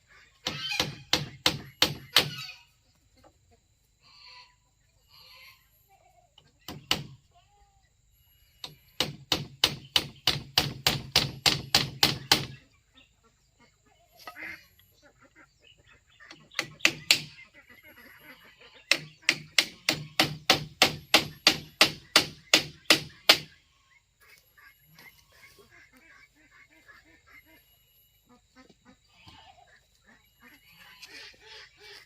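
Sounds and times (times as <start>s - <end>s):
hammer driving nails into wood: 0.4s - 2.4s, 6.7s - 7.2s, 8.6s - 12.5s, 16.6s - 17.3s, 18.9s - 23.5s.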